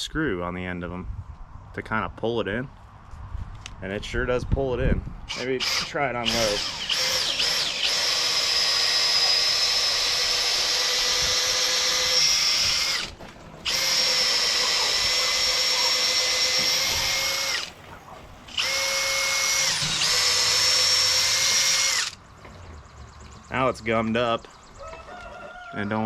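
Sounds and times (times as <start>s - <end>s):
cordless drill motor whine: 5.3s - 17.7s, 18.5s - 22.2s.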